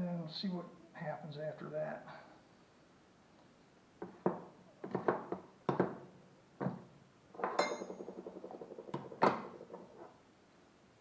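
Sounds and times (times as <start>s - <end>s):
metal wrenches clattering: 7.4s - 8.2s.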